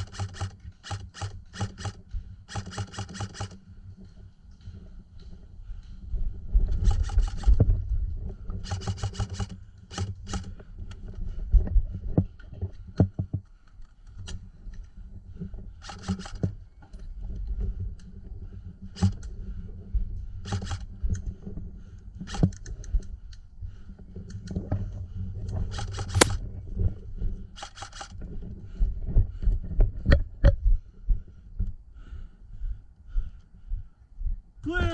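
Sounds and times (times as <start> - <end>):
airsoft guns firing bursts: 0.0 - 3.6, 25.8 - 26.4
scattered clicks: 0.0 - 3.6, 6.8 - 7.6, 15.8 - 16.5, 27.6 - 28.2.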